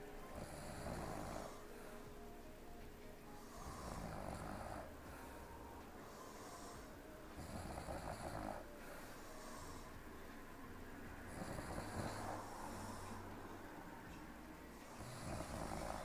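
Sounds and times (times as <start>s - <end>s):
woman snoring softly: 0.0s - 2.0s, 3.3s - 10.2s, 11.2s - 16.0s
quiet breathing: 0.0s - 16.0s.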